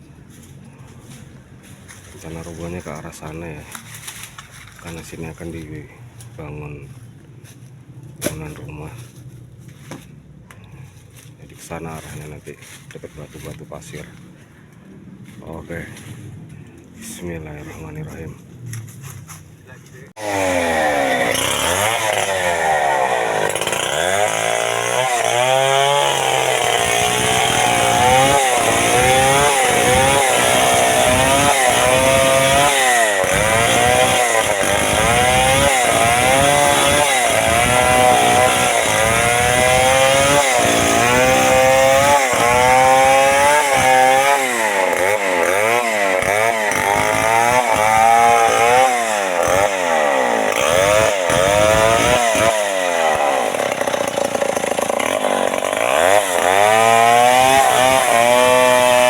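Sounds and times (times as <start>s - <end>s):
chainsaw cutting wood: 20.1s - 59.0s.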